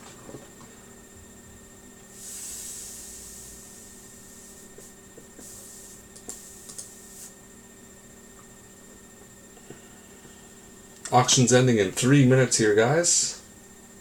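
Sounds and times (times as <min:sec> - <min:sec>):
electrical hum: 0:00.0 - 0:14.0
soft hissing rustles: 0:02.1 - 0:07.4.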